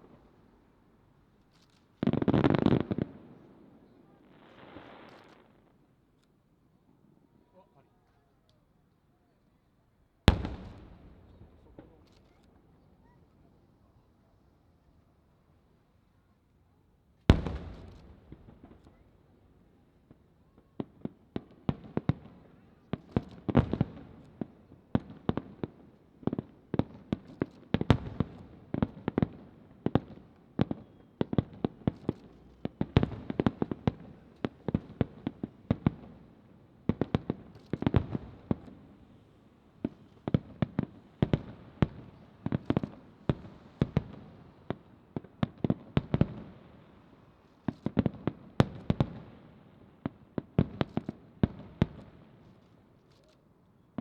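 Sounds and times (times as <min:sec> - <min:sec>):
distant fireworks booming: 0:10.3 - 0:12.0.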